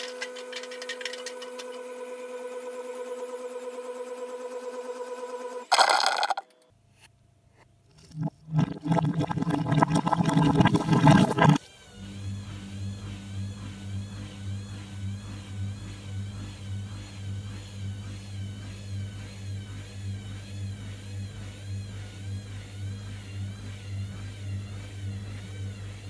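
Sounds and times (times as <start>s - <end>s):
steady low hum: 7.9s - 26.0s.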